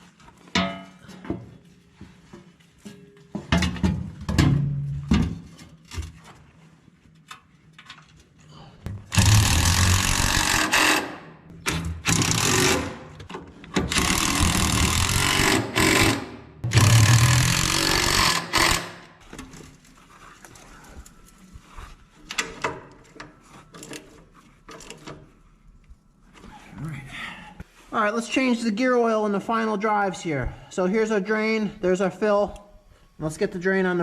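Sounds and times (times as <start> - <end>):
tools clanking on metal: 0.5 - 1.5
impact wrench hammering: 8.9 - 13.2, 13.8 - 19.1.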